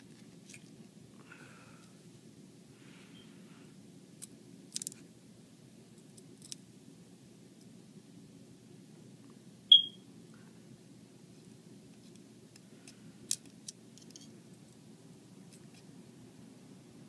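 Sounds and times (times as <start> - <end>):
small clicks of phone parts: 4.2 - 5.0, 12.8 - 14.3
high-pitched beep: 9.7 - 10.0.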